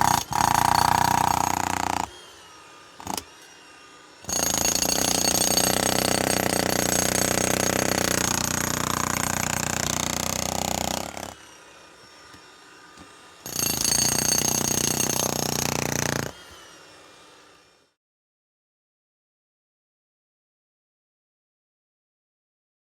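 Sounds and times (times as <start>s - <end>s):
jackhammer hammering concrete: 0.0s - 2.2s, 3.0s - 3.3s, 4.2s - 11.4s, 13.0s - 16.4s.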